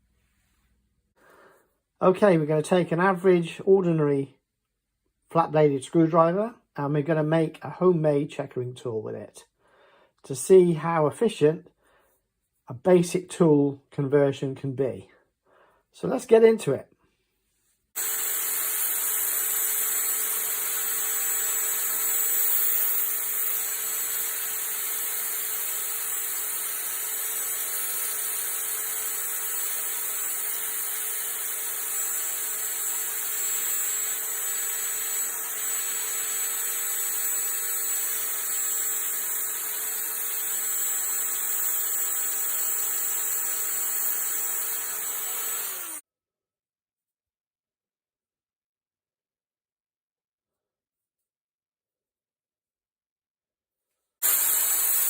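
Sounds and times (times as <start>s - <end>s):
power tool grinding metal: 18.0s - 46.0s, 54.2s - 55.0s.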